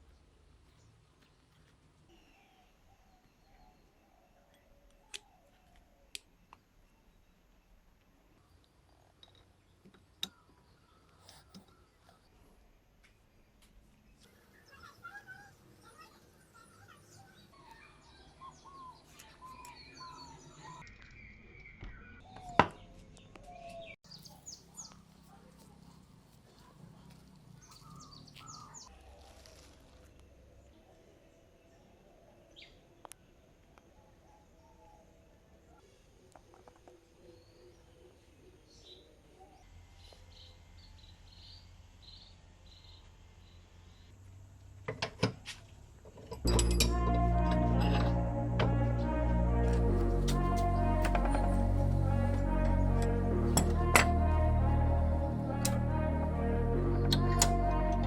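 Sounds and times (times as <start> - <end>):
birds chirping: 0.0 - 44.2
low steady hum: 46.3 - 58.0.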